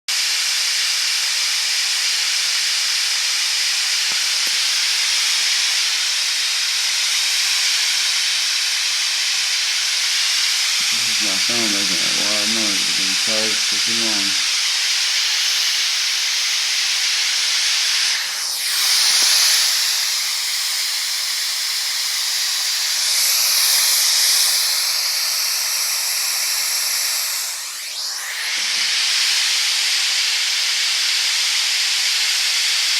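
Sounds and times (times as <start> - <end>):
loudspeaker white noise hiss: 10.8 - 14.5.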